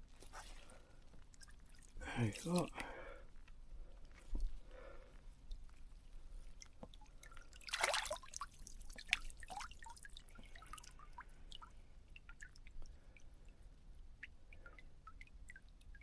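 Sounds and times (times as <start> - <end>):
water dripping and trickling: 0.0 - 16.0
water splash: 7.6 - 10.6.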